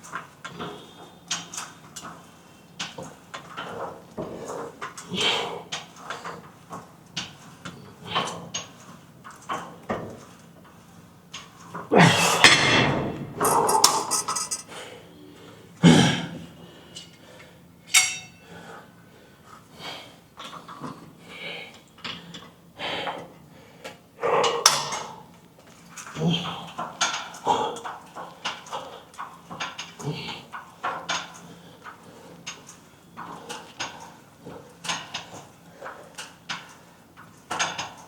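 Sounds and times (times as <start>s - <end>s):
dumbbells clinking and knocking: 12.5s - 14.7s, 17.9s - 18.4s
ringing metal clanks: 17.9s - 18.4s.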